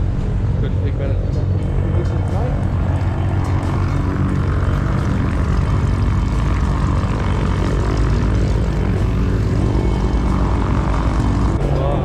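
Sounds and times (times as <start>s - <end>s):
propeller aeroplane engine drone: 0.0s - 12.0s.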